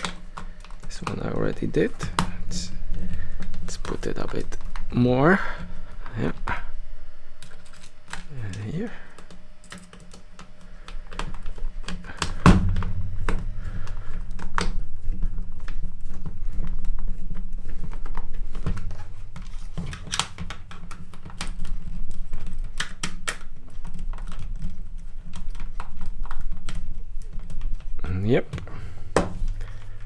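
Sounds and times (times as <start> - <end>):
low steady hum: 0.0 - 30.0
plastic parts knocking together: 7.4 - 16.3, 17.7 - 30.0.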